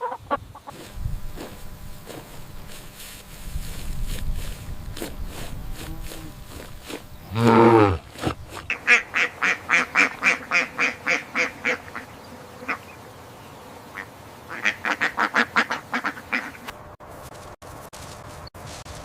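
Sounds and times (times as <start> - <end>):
fowl quack-like calls: 0.0 - 0.7, 8.7 - 13.0, 13.9 - 16.7.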